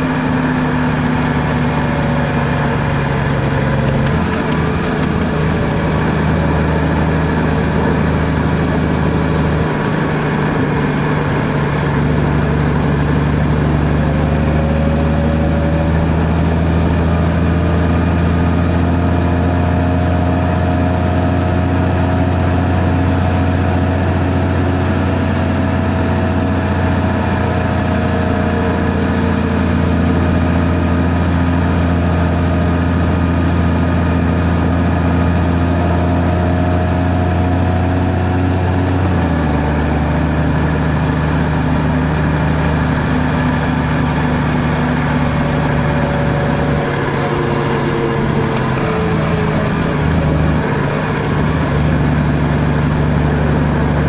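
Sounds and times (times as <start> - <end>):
vehicle engine and road noise: 0.0 - 54.0.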